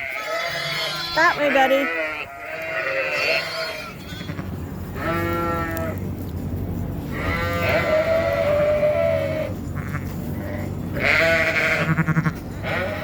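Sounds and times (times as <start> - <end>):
sheep bleating: 0.0 - 6.0, 7.1 - 13.0.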